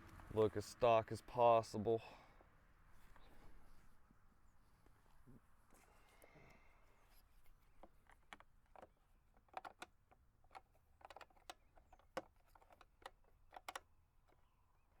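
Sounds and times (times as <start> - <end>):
clicks and taps of small tools: 7.8 - 14.4.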